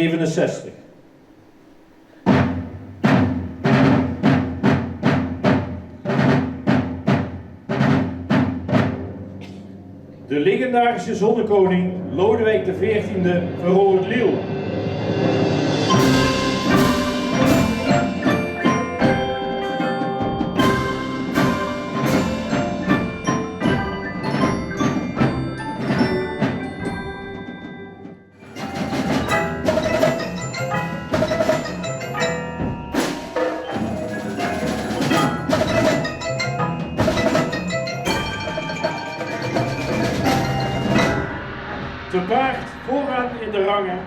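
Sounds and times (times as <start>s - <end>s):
bell-like mallet percussion music: 15.4s - 41.5s.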